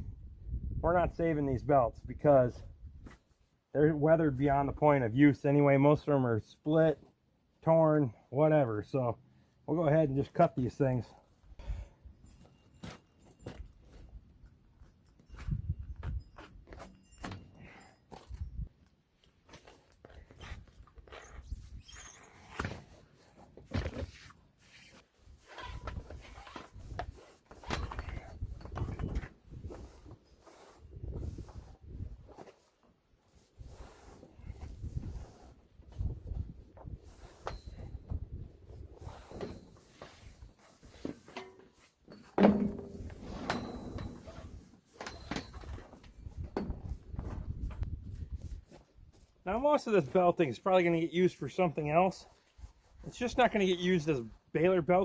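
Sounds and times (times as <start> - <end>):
rubber belts knocking and scraping: 19.2 - 49.3
loud ringing clank: 42.5 - 44.4.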